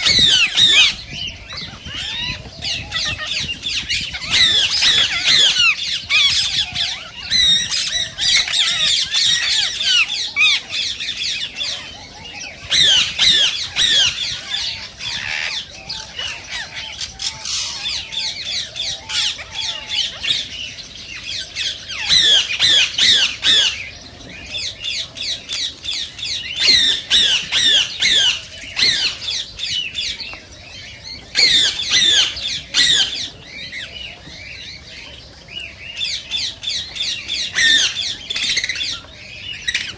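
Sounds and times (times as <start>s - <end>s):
parakeet chatter: 0.0s - 39.9s
parakeets calling shrilly: 0.0s - 39.9s.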